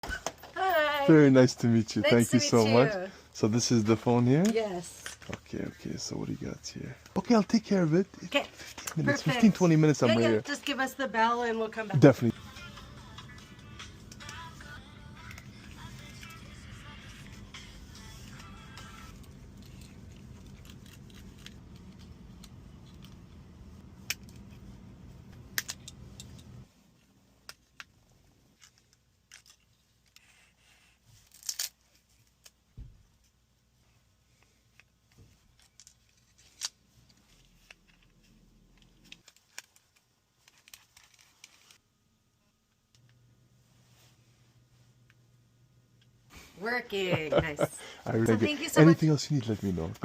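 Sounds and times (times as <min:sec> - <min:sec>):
steady low hum: 0:12.0 - 0:27.4
small tools clicking and scraping: 0:18.4 - 0:23.2, 0:28.5 - 0:30.5.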